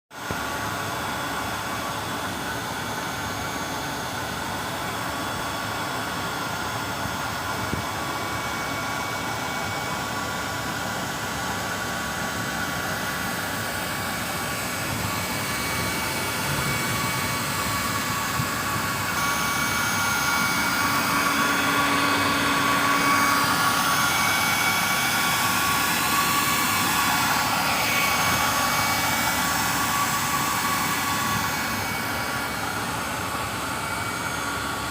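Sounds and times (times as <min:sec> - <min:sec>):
industrial machinery whining: 0:00.2 - 0:34.9.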